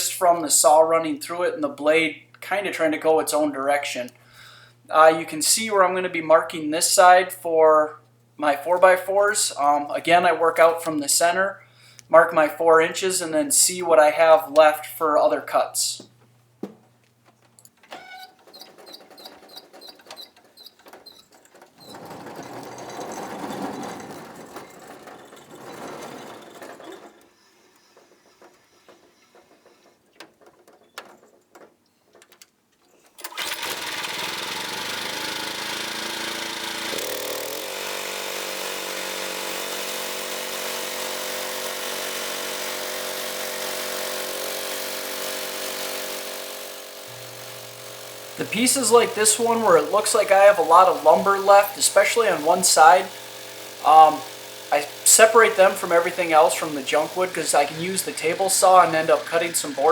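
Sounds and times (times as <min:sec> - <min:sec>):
clicks and knocks of handling: 0:29.4 - 0:33.2
gasoline engine running: 0:47.0 - 0:59.9.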